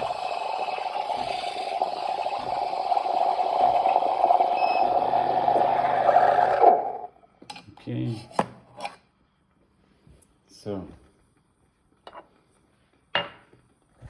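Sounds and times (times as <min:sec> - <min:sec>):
coffee machine running: 0:00.0 - 0:07.1.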